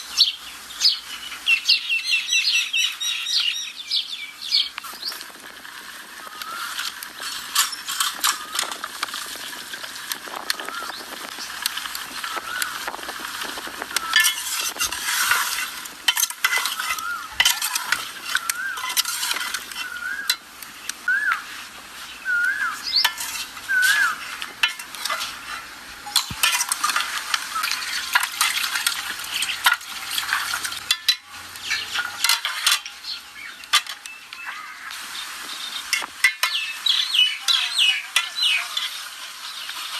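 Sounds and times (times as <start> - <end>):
utensil scraping against pan: 4.8 - 20.8, 21.4 - 34.1
food sizzling in a pan: 4.8 - 39.9.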